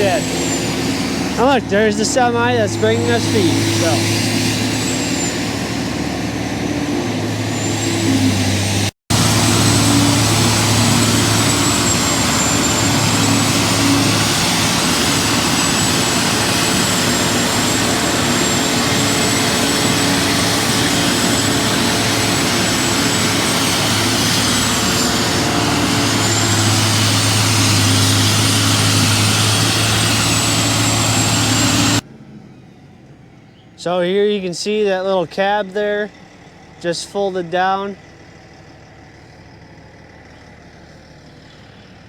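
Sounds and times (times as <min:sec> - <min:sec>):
grinder mechanical din: 0:00.0 - 0:32.1
high whine: 0:00.0 - 0:32.2.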